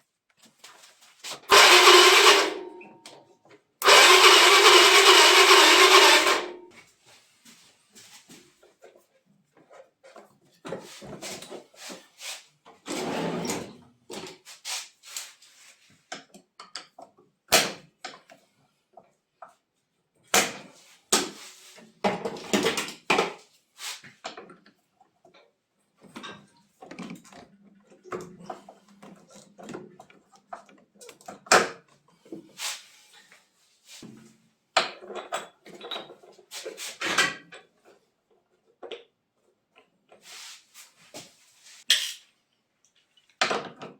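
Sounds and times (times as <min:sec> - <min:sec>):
tools and parts knocking and scraping: 0:00.6 - 0:06.8, 0:24.1 - 0:32.5, 0:34.0 - 0:40.3, 0:41.8 - 0:42.3.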